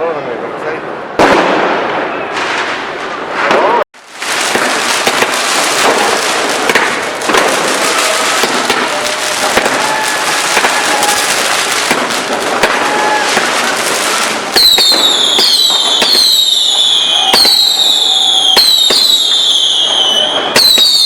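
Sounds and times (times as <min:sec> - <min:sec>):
fireworks bangs: 0:01.1 - 0:21.0
firecrackers crackling and popping: 0:01.2 - 0:21.0
whistling firework: 0:01.2 - 0:21.0.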